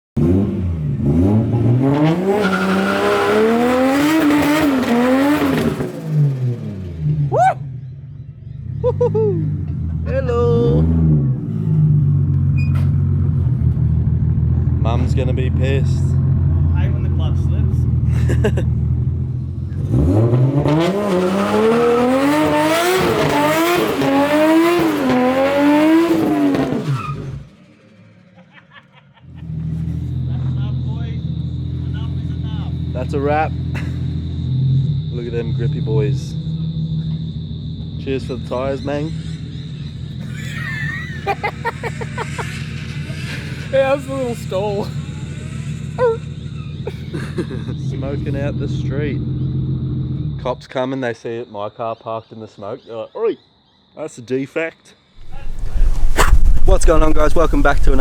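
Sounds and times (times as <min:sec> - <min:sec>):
car engine revving hard: 0:00.2 - 0:07.3, 0:19.7 - 0:27.5, 0:55.2 - 0:58.0
car engine revving: 0:00.2 - 0:28.1, 0:41.3 - 0:47.0, 0:47.9 - 0:50.4, 0:55.2 - 0:58.0.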